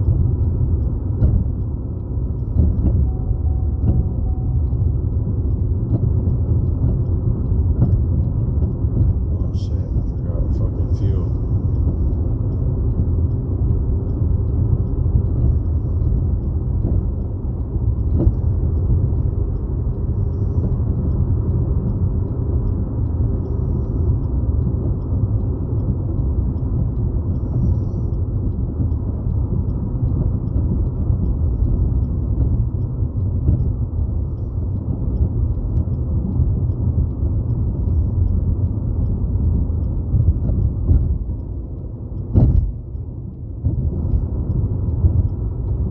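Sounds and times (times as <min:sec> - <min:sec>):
car interior road rumble: 0:00.0 - 0:45.9.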